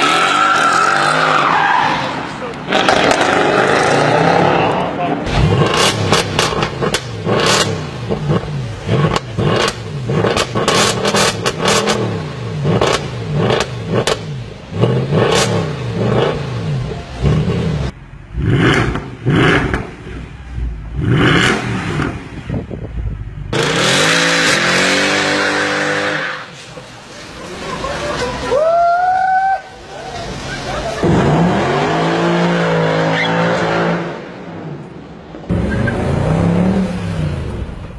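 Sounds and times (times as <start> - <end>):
car engine revving: 2.1 - 28.3, 30.2 - 34.5
exhaust cracks: 2.5 - 16.4.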